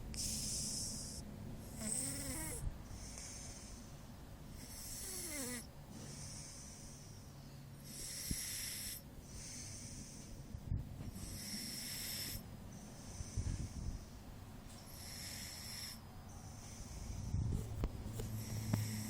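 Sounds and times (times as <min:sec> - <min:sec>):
cat snoring: 0:00.1 - 0:03.8, 0:04.6 - 0:06.7, 0:07.8 - 0:10.2, 0:11.1 - 0:12.5, 0:14.9 - 0:16.0, 0:18.3 - 0:19.0.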